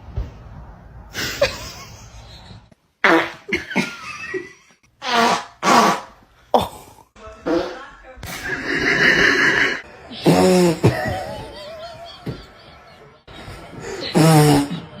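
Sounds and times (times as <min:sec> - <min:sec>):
fart sounds: 0:03.0 - 0:03.7, 0:05.0 - 0:06.2, 0:07.4 - 0:10.9, 0:14.1 - 0:15.0.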